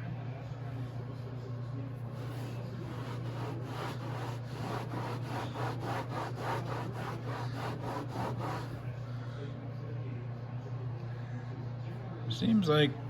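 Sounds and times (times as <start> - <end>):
scrubbing strokes on deck: 2.1 - 8.9.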